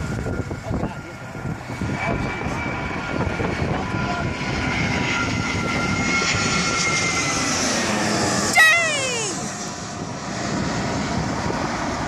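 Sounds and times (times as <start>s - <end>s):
jet engines whining: 0.0s - 12.0s.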